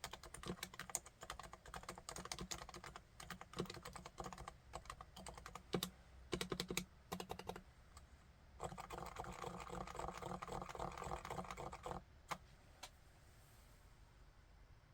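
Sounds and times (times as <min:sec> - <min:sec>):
muted keyboard typing: 0:00.0 - 0:07.6, 0:08.6 - 0:12.0.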